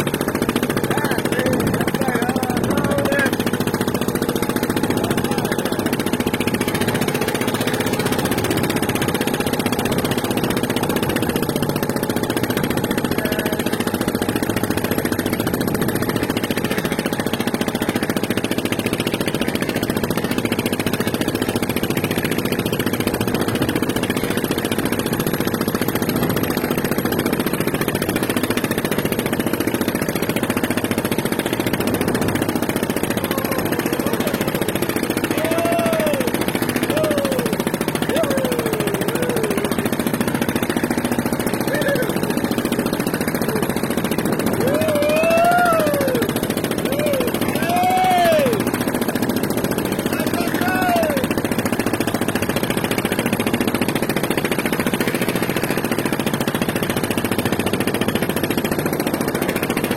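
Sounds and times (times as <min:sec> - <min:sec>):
engine running with pulsing beat: 0:00.0 - 0:59.9.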